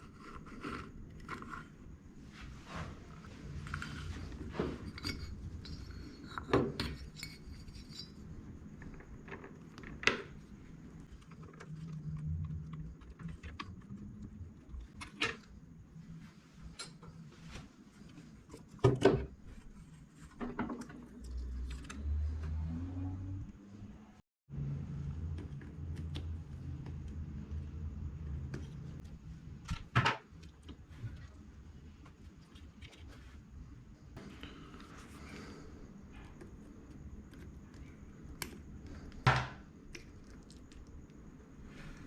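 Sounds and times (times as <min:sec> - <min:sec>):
metal tools and parts clinking: 0:04.6 - 0:08.4.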